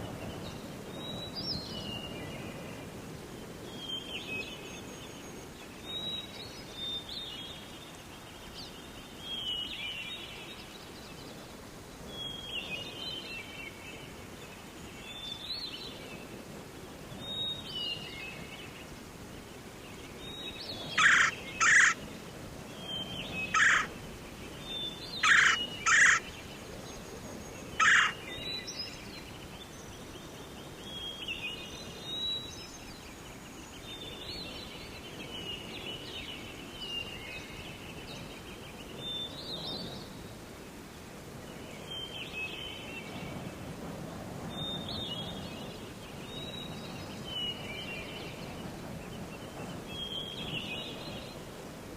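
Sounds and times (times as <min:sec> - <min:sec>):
forest birds singing: 0:00.0 - 0:43.7, 0:44.5 - 0:51.9
harsh bird calls: 0:20.7 - 0:22.0, 0:22.8 - 0:24.0, 0:24.8 - 0:26.4, 0:27.6 - 0:28.7.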